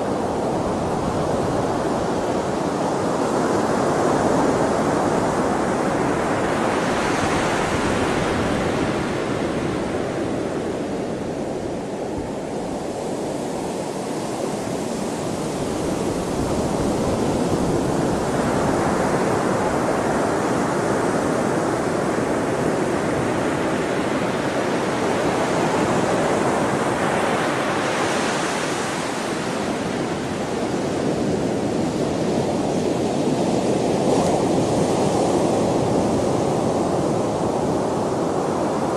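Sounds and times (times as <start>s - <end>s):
sea waves breaking on shore: 0.0s - 38.9s.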